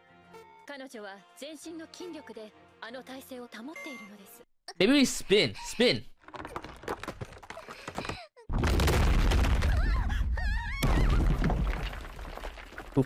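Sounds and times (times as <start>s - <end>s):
high wavering voice-like cries: 9.7s - 11.3s.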